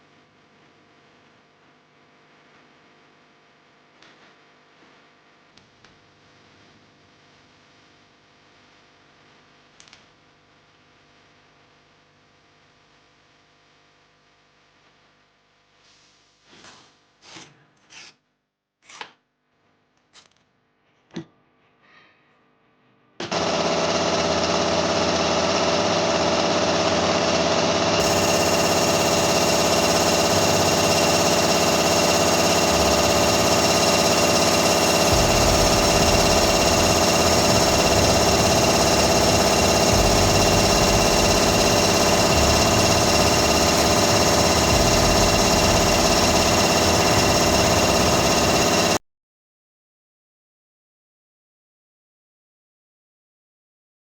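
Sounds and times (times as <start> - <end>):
hammer drill running: 23.3 - 49.0.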